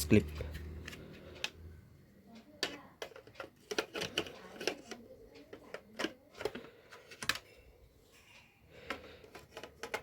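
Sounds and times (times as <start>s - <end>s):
plastic clicks and taps: 2.4s - 7.5s, 8.8s - 10.0s.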